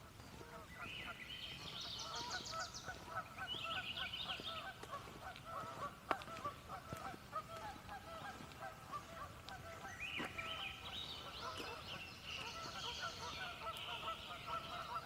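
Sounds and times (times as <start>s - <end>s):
songbird trill: 0.0s - 5.9s, 9.5s - 15.0s
geese honking: 0.0s - 15.0s.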